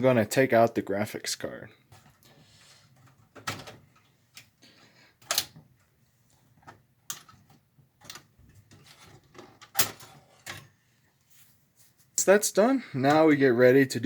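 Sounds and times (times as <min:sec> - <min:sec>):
clicks and knocks in computer case: 0:03.2 - 0:04.0.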